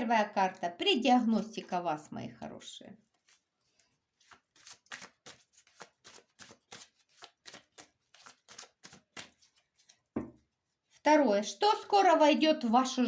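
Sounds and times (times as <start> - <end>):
cards being shuffled: 3.0 - 11.0.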